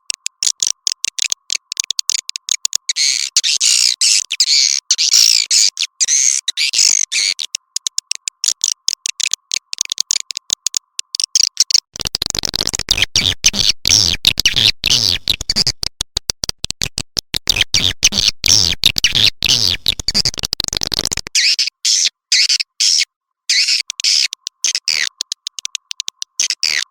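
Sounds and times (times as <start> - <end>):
swiftlets chirping twitters: 2.4 - 7.8, 21.4 - 26.5.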